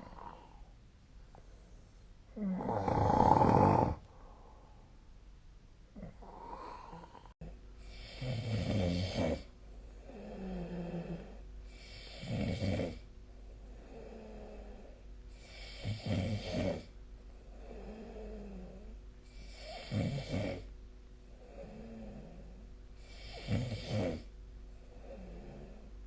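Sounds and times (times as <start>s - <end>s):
person snoring: 0.0s - 0.6s, 2.4s - 4.5s, 6.0s - 13.0s, 13.7s - 16.9s, 17.5s - 20.7s, 21.4s - 24.3s, 24.9s - 25.9s
quiet breath with low hum: 0.0s - 26.0s.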